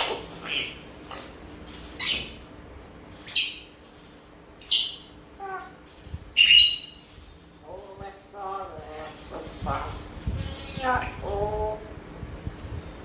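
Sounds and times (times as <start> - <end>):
parrot high-pitched calls: 0.0 - 1.4, 2.0 - 2.4, 4.6 - 7.0, 8.9 - 11.8.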